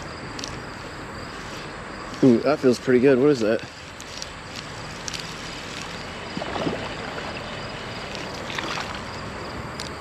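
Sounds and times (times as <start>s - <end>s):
traffic hum: 0.0s - 10.0s
creek water flowing: 3.7s - 9.7s.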